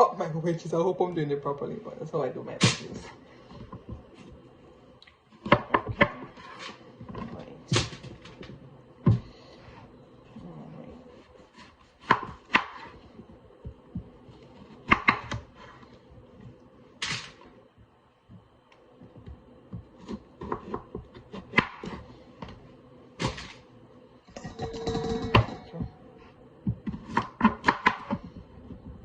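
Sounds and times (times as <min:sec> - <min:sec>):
knife chopping on cutting board: 0:11.5 - 0:13.0, 0:14.0 - 0:15.8, 0:19.7 - 0:22.1, 0:26.7 - 0:28.9.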